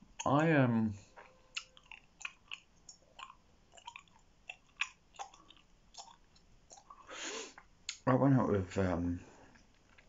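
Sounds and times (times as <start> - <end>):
gum chewing wet smacks: 1.1 - 8.0.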